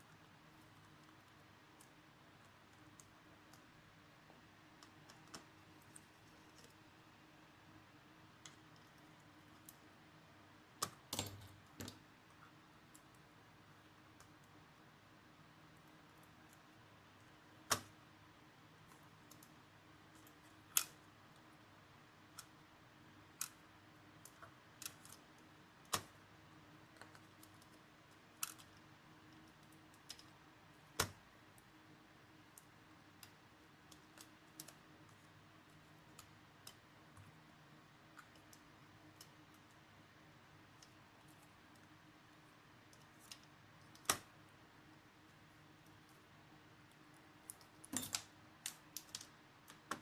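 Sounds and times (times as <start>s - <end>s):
faint steady hum: 0.0s - 50.0s.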